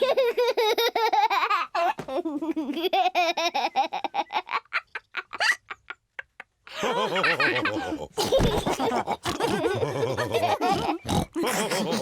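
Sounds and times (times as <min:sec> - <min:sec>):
cartoon pigs laughing: 0:02.4 - 0:12.0
pig snorts: 0:09.2 - 0:12.0.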